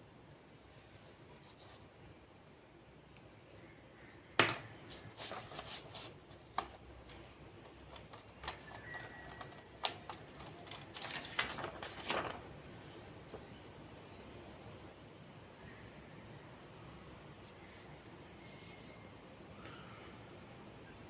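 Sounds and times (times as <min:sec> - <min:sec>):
laptop parts clicking and knocking: 0:04.4 - 0:04.7, 0:06.3 - 0:11.1.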